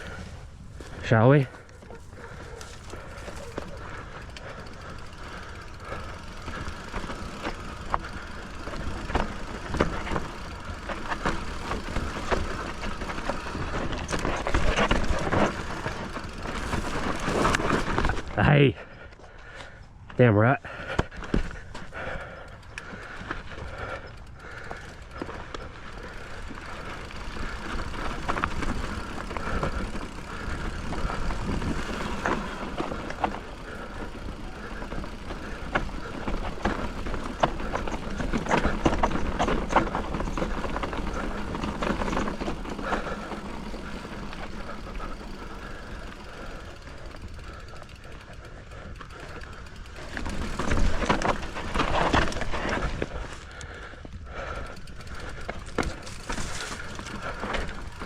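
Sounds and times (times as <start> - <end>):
bike rattling over bumps: 0.0 - 58.0
bike tyres on rocky gravel: 0.0 - 58.0.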